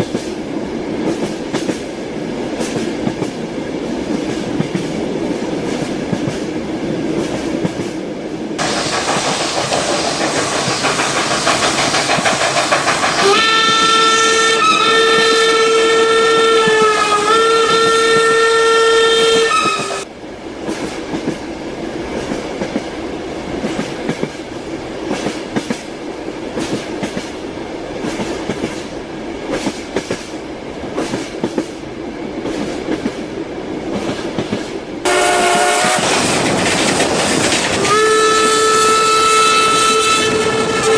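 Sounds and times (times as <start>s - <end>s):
train wheels clattering on rails: 0.0s - 8.0s, 8.6s - 18.3s, 19.2s - 40.9s
train rushing: 0.0s - 40.9s
train horn blast: 13.2s - 20.1s, 35.0s - 36.2s, 37.8s - 40.9s.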